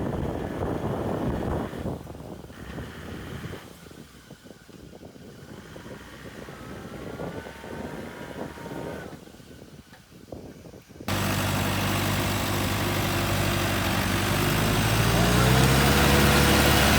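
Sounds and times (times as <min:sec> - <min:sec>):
off-road engine rumbling: 0:00.0 - 0:16.9.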